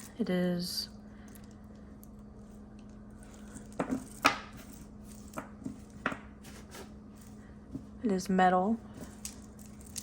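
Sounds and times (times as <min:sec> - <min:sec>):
metal beads clicking together: 0:09.2 - 0:10.0.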